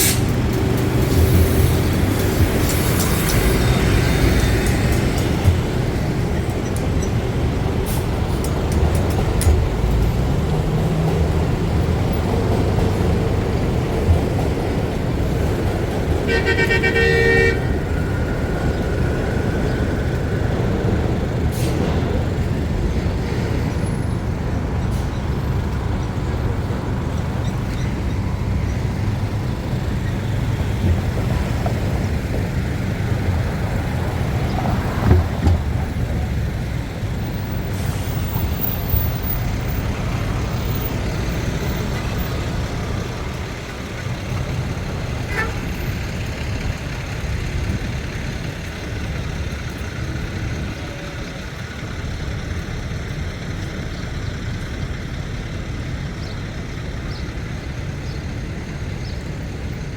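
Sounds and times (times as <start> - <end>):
street traffic rumble: 0.0 - 59.9
vehicle horn honking: 16.2 - 17.9, 45.2 - 45.7.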